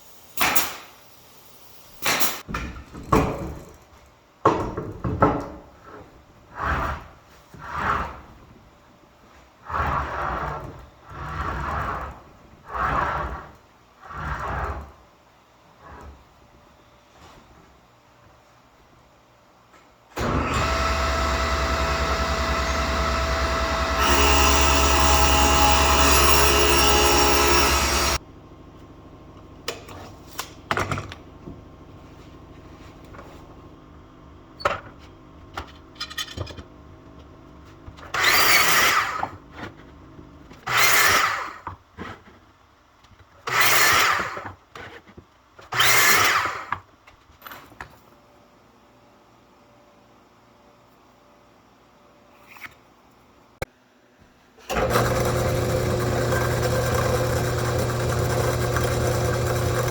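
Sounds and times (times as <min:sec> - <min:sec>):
power tool running: 0:20.2 - 0:28.2, 0:54.7 - 0:59.9
short drill bursts: 0:20.4 - 0:28.2.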